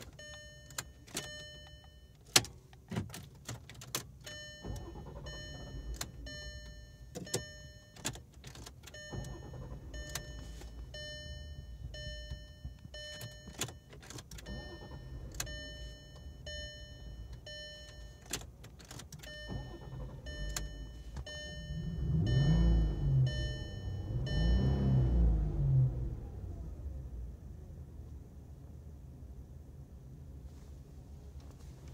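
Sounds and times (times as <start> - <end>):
dashboard warning chime: 0.0 - 2.7, 4.0 - 26.0
ignition clicks: 0.0 - 26.3
low engine sound: 19.3 - 30.3.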